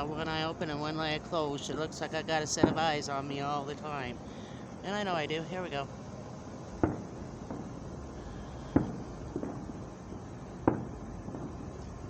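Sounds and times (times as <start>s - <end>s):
distant firework booms: 6.7s - 12.0s
faint firework pops: 6.8s - 7.7s, 8.6s - 9.8s, 10.6s - 12.0s.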